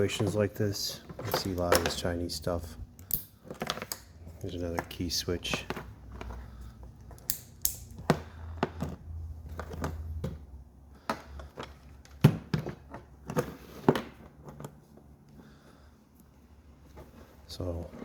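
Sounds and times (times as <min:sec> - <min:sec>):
plastic parts clicking and knocking: 0:01.0 - 0:02.2, 0:02.9 - 0:14.8.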